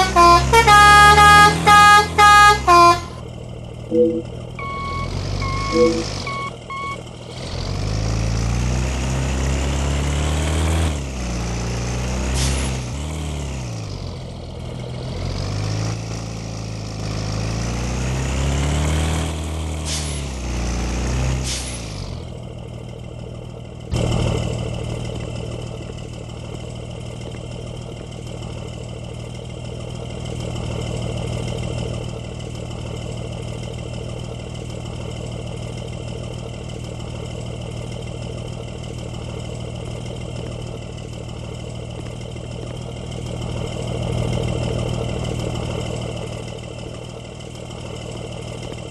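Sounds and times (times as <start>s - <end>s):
multi-tone bus horn: 0.0s - 3.2s, 3.9s - 6.4s
bus diesel engine revving: 0.0s - 48.9s.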